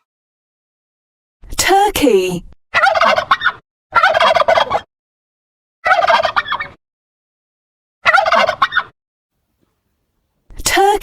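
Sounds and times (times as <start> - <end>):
turkey gobbling: 2.8 - 4.9, 5.8 - 6.8, 8.0 - 8.9.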